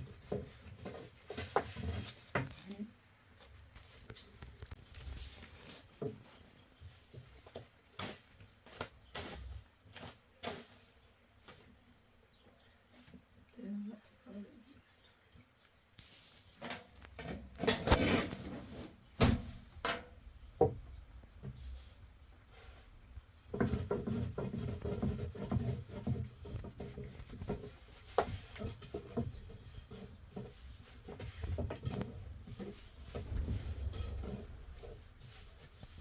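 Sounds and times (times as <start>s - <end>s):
rustling: 0.0s - 36.0s
objects knocking and clattering: 16.6s - 21.6s.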